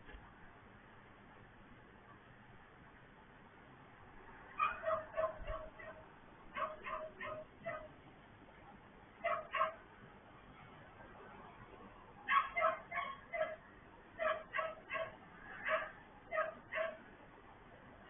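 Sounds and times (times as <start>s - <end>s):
dog barking: 4.6s - 7.9s, 9.2s - 9.8s, 12.3s - 13.6s, 14.2s - 17.1s.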